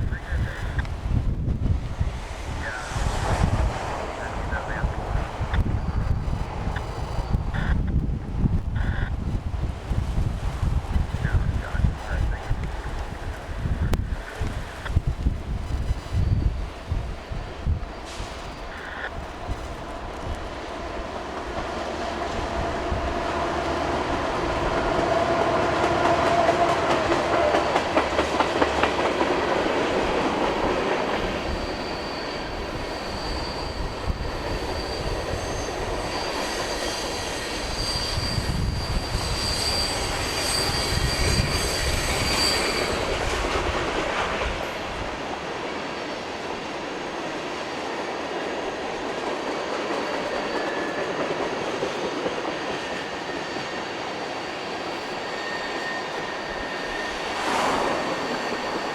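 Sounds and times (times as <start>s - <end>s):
high flange squeal: 2.0s - 8.0s, 15.6s - 28.2s, 30.4s - 47.0s, 47.6s - 58.9s
train wheels clicking over rail joints: 18.0s - 44.9s.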